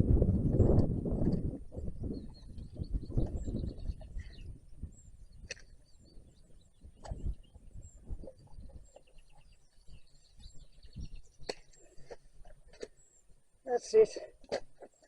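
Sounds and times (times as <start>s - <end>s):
faint bird chirps and trills: 1.5s - 14.1s.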